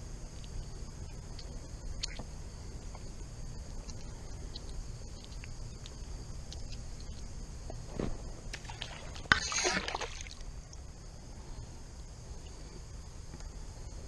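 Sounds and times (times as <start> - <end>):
high-pitched insect chorus: 0.0 - 14.0
low background rumble: 0.0 - 14.0
faint ticks: 0.2 - 7.8, 13.3 - 13.6.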